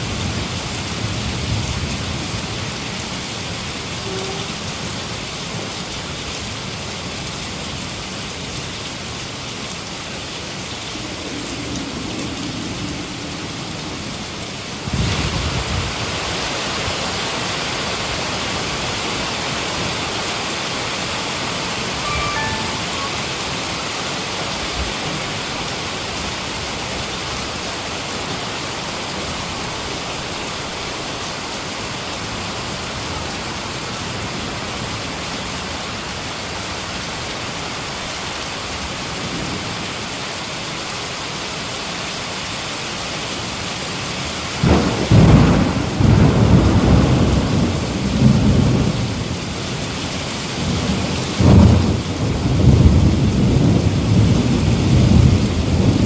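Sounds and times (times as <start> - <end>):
heavy rain hissing: 0.0 - 56.0
thunder rumbling: 44.6 - 49.3.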